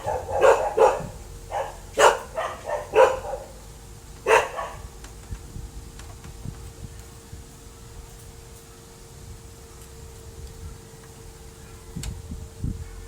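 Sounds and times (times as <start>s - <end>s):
dog barking: 0.0s - 3.6s, 4.2s - 4.9s
faint steady hum: 0.0s - 13.0s.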